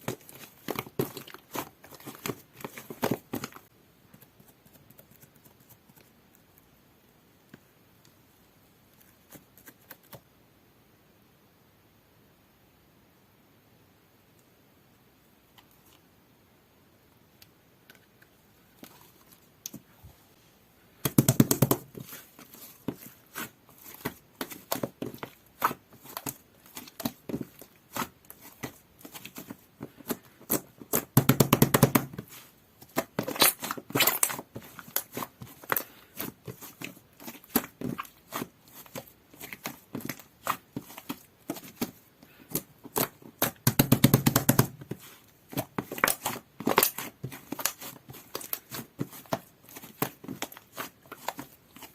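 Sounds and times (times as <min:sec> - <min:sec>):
slime squished by hand: 0:21.1 - 0:51.9.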